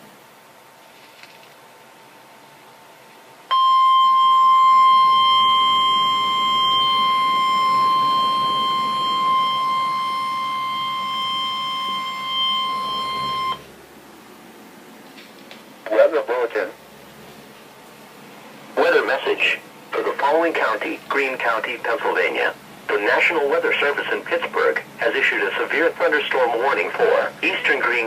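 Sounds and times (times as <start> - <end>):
loud steady alarm beep: 3.5 - 13.7
faint radio hiss: 5.8 - 28.0.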